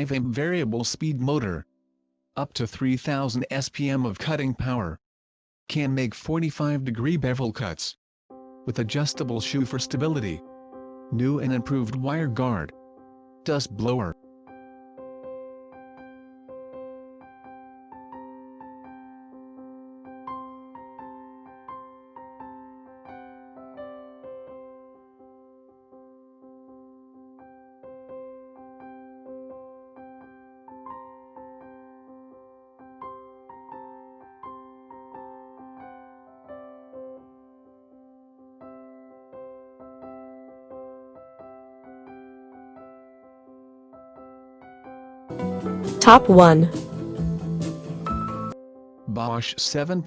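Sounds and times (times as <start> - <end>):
soft electric piano music: 8.4 - 13.4, 14.2 - 39.8.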